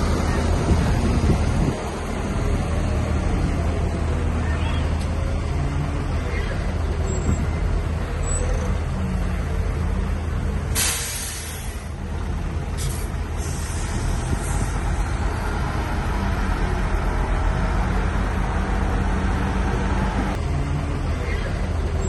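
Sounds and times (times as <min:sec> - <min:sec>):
diesel engine running: 0:00.0 - 0:22.0
loud air hiss: 0:10.8 - 0:11.9, 0:12.8 - 0:14.8.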